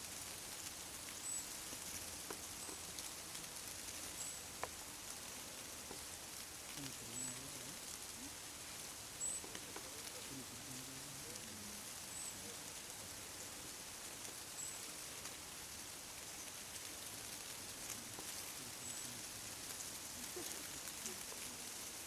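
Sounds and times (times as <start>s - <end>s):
butterfly wings rustling: 0.0s - 22.0s
faint voices: 2.3s - 8.6s, 9.2s - 15.3s, 17.2s - 22.0s.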